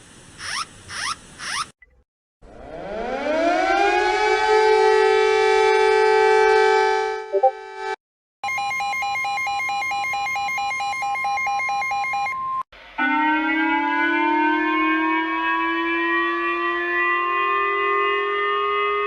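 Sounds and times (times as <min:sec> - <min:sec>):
fast electronic warble: 0:00.4 - 0:01.7
two-tone siren: 0:02.4 - 0:19.0.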